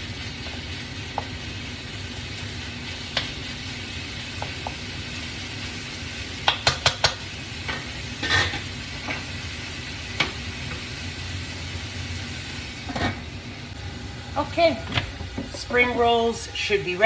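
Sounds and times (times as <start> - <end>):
food sizzling in frying pan: 0.0 - 16.5
utensil clicking against pan: 6.4 - 7.2.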